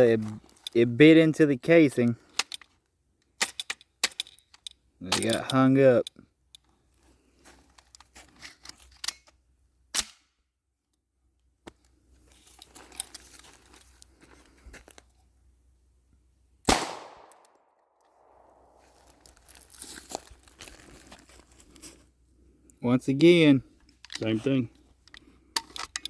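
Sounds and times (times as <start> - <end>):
gun handling metallic clicks: 2.4 - 6.7, 7.7 - 9.4, 16.7 - 18.4, 24.0 - 24.4, 25.0 - 26.0
loud gunshot: 16.7 - 17.4.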